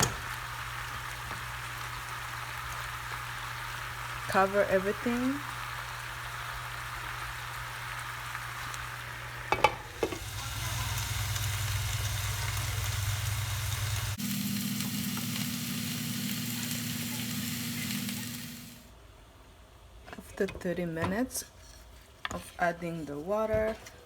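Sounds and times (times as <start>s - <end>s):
food sizzling in a pot: 0.0s - 18.9s.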